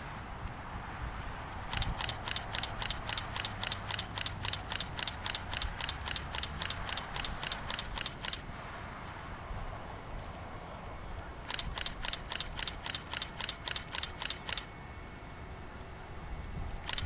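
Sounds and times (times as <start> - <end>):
camera shutter burst: 1.6 - 8.5, 11.5 - 14.7.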